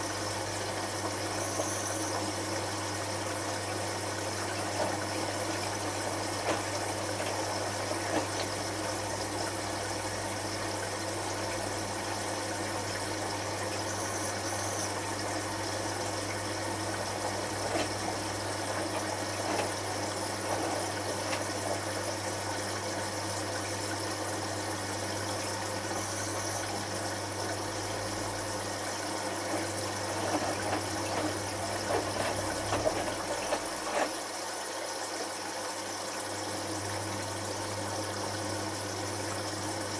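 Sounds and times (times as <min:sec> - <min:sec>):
drain pump humming: 0:00.0 - 0:39.9
water splashing in drum: 0:04.0 - 0:10.0, 0:15.2 - 0:23.8, 0:28.4 - 0:34.4.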